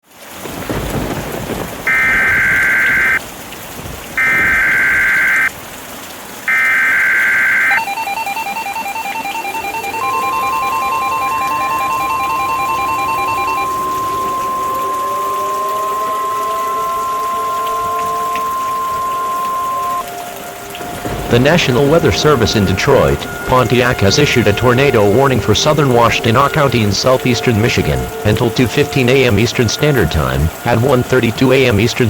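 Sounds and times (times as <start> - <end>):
steady rain: 0.0 - 32.0
steady warning alarm tone: 1.9 - 3.2, 4.2 - 5.5, 6.5 - 32.0
pulsing two-note attention tone: 6.5 - 32.0
faint rising glides: 9.0 - 31.7.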